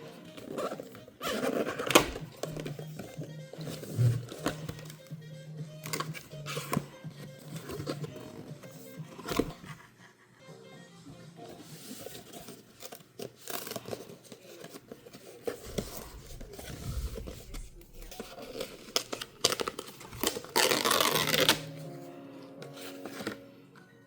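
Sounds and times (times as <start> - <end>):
packaging scraping and crinkling: 11.8 - 21.8
packaging tearing: 17.9 - 21.8.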